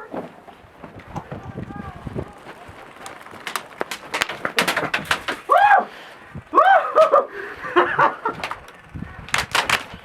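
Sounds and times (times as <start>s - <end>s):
people shouting: 5.4s - 7.4s.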